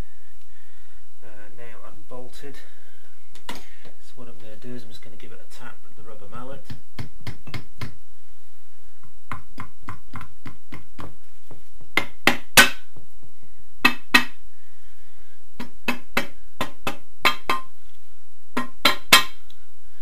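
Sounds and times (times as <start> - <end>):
rubber mallet tapping oil pan: 15.6 - 17.7.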